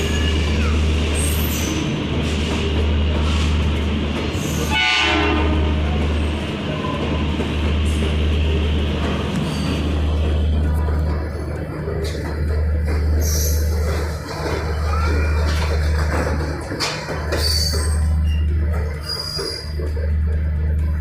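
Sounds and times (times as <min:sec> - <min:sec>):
train low rumble: 0:00.0 - 0:21.0
train horn blast: 0:04.7 - 0:06.0.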